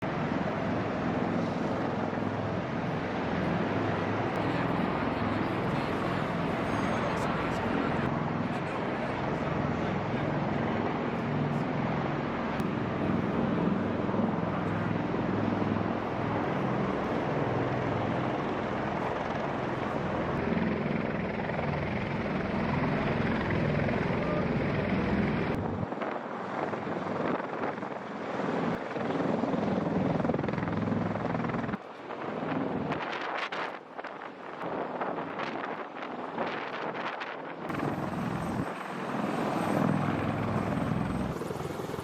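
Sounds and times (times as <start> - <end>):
helicopter turbine and rotor noise: 0.0 - 42.0.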